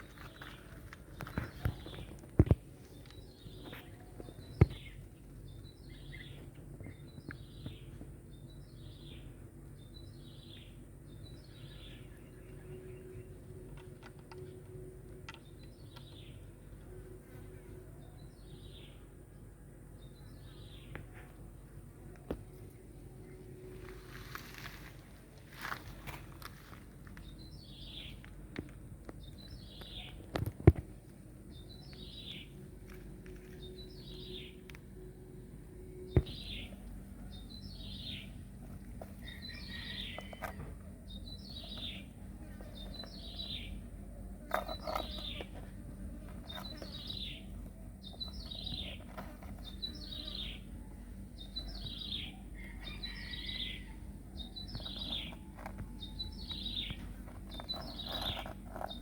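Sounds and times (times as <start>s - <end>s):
bird chirping: 0.0s - 17.0s, 29.1s - 30.5s, 31.5s - 59.0s.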